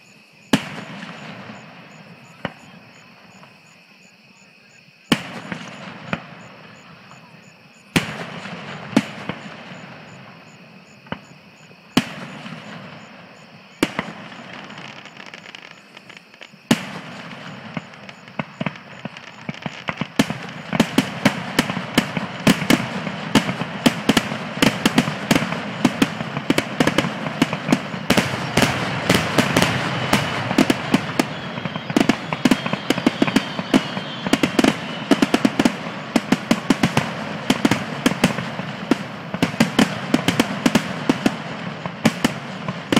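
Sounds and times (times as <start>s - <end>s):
fireworks bangs: 0.0s - 42.9s.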